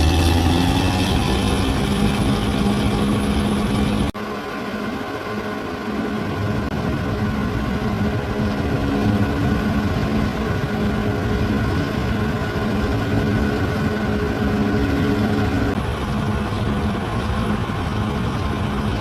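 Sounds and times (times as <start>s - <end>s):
bulldozer diesel engine running: 0.0s - 4.2s.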